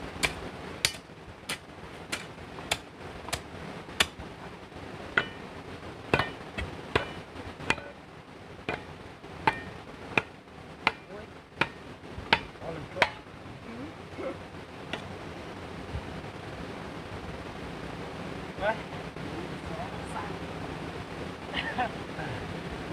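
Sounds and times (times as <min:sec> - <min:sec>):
hammer striking stone: 0:00.2 - 0:03.4, 0:05.2 - 0:05.4, 0:06.2 - 0:08.0, 0:08.7 - 0:08.9, 0:09.5 - 0:13.2.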